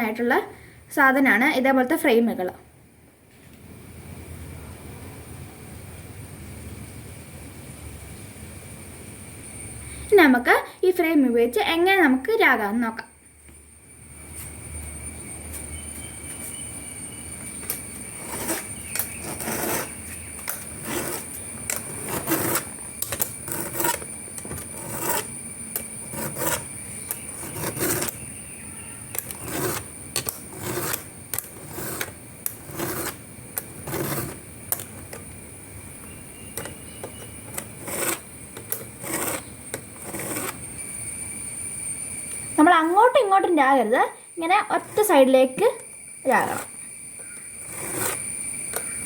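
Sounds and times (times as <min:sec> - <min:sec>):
file rasping on chainsaw chain: 0:18.1 - 0:25.4, 0:26.0 - 0:28.2, 0:29.1 - 0:35.2, 0:36.6 - 0:40.7, 0:46.3 - 0:46.7, 0:47.6 - 0:48.9.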